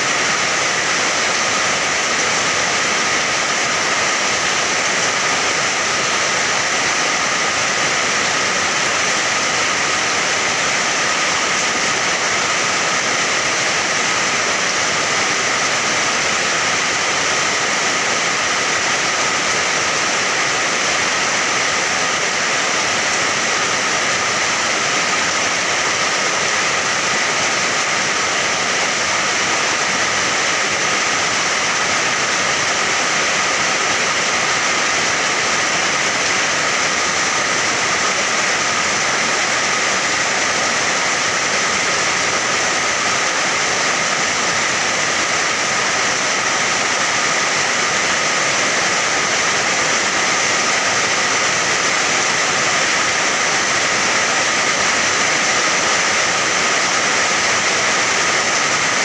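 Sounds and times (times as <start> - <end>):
steady rain: 0.0 - 59.0.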